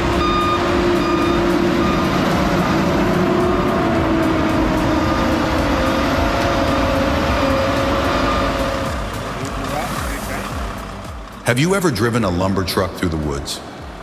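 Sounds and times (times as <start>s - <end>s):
backup alarm beeping: 0.0s - 9.1s
diesel engine running under load: 0.0s - 14.0s.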